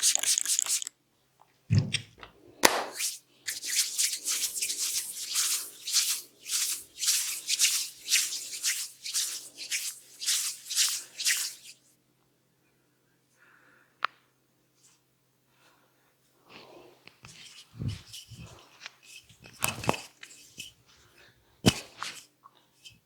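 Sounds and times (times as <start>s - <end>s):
hands rubbing hair: 0.0s - 0.9s, 2.6s - 11.8s, 17.3s - 20.9s.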